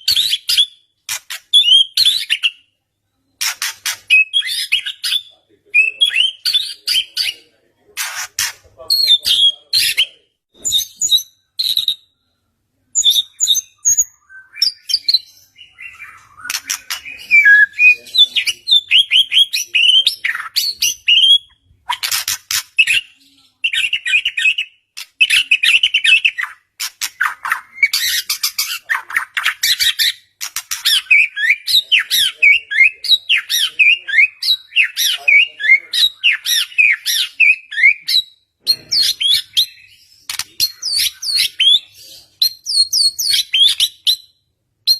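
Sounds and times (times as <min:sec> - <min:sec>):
bird singing whistles and trills: 0:13.0 - 0:21.6, 0:30.9 - 0:44.9.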